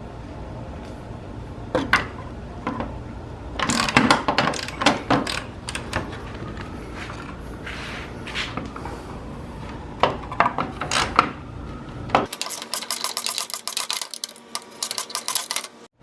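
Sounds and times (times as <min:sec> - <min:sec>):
ratchet wrench clicking: 0:03.6 - 0:06.0, 0:12.3 - 0:15.7.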